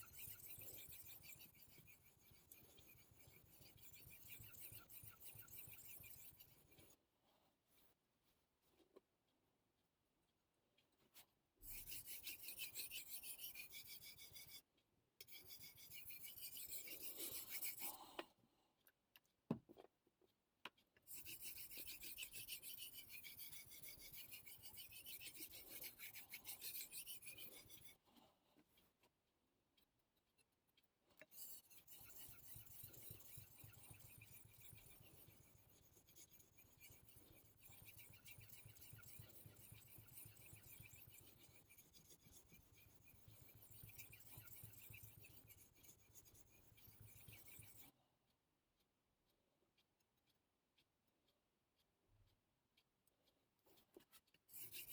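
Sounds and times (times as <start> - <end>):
knife scraping on whetstone: 0.0 - 6.5, 15.3 - 17.9, 21.1 - 27.9, 31.3 - 47.9.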